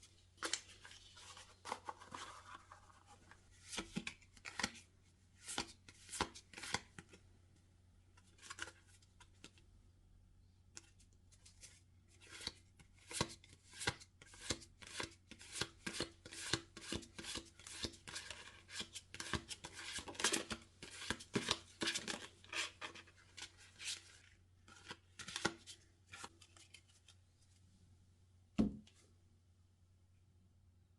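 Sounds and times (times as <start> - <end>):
thump: 28.6 - 28.9.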